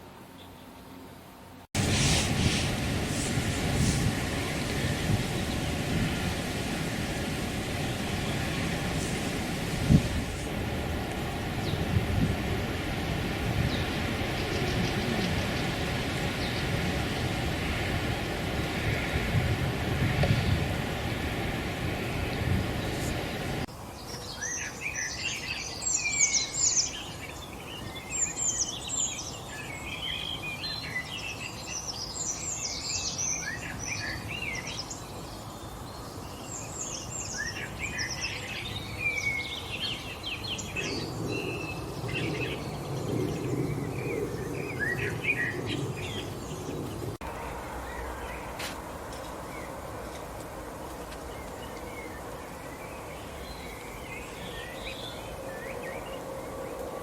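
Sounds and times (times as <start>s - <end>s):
background hiss: 0.0s - 44.1s.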